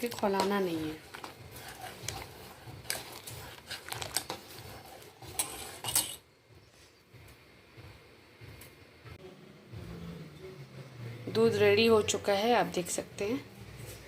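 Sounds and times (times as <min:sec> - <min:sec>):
spoon clinking and scraping pot: 0:00.1 - 0:06.2.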